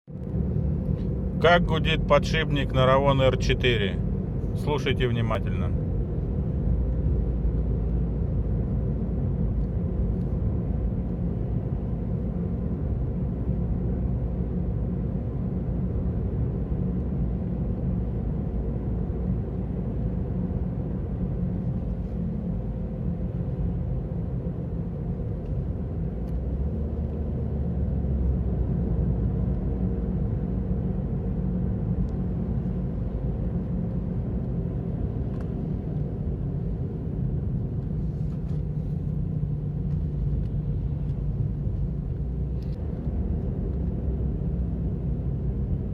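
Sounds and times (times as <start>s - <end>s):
car road noise: 0.0s - 45.9s.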